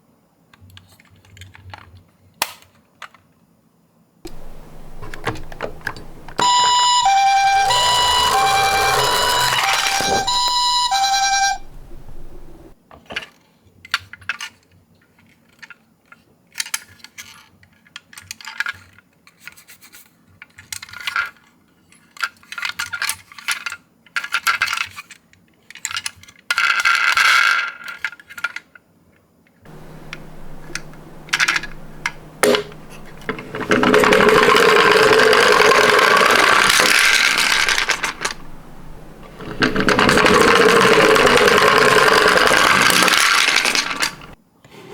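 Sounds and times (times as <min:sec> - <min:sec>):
toy car clicks and rattles: 0:04.3 - 0:11.7, 0:15.2 - 0:19.8, 0:29.7 - 0:44.4
loud steady noise: 0:04.3 - 0:12.8, 0:29.7 - 0:44.4.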